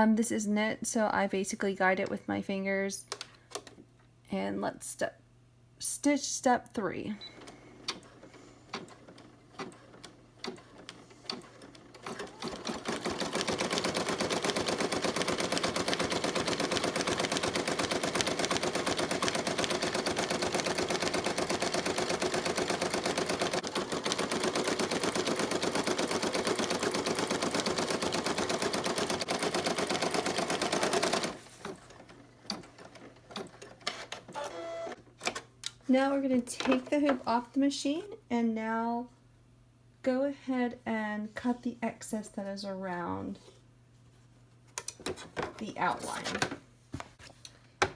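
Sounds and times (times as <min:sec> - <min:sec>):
embroidery machine sewing: 0:08.0 - 0:35.0.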